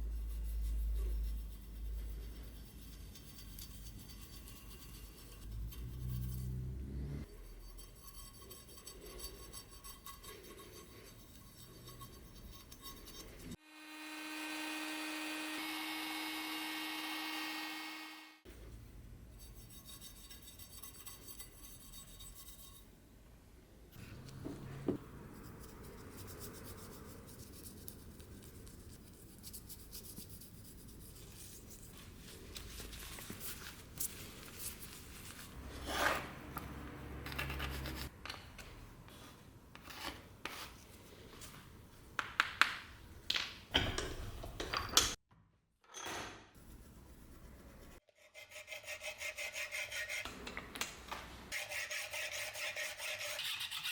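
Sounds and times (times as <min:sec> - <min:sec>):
filing strokes on knife: 0:00.0 - 0:13.6, 0:19.3 - 0:22.9, 0:46.6 - 0:50.3, 0:51.5 - 0:53.9.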